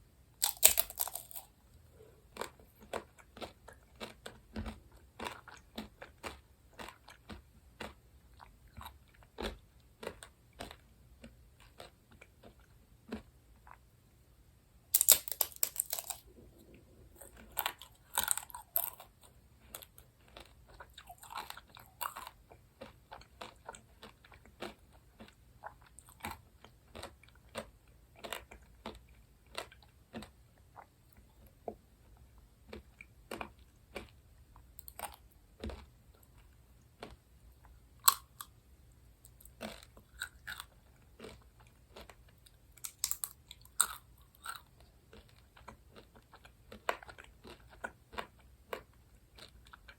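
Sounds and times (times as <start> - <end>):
crunching bites: 0.4 - 1.5, 14.9 - 16.3, 17.2 - 25.4, 38.0 - 38.5, 39.3 - 41.4, 42.8 - 45.4
chewing sweets: 0.4 - 13.9, 14.9 - 38.6, 39.2 - 49.9.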